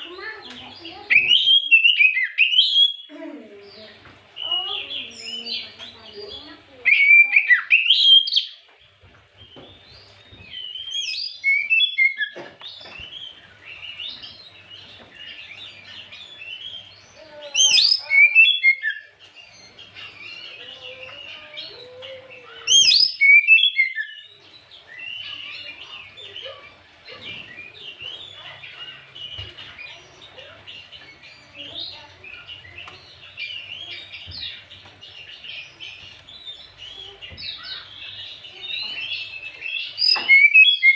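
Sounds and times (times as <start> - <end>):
bird twittering and chattering: 0.0 - 40.9
bird whistled phrases: 1.1 - 3.1, 6.8 - 8.6, 10.6 - 12.4, 17.6 - 19.1, 22.4 - 24.3, 38.6 - 40.9.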